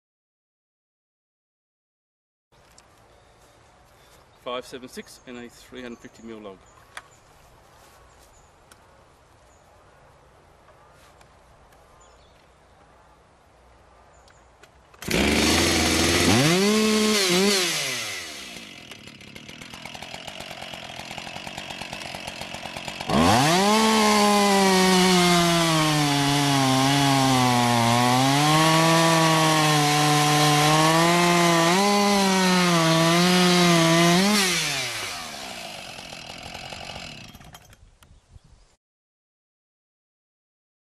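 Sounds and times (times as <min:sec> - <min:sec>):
chainsaw cutting log: 0:15.0 - 0:37.8.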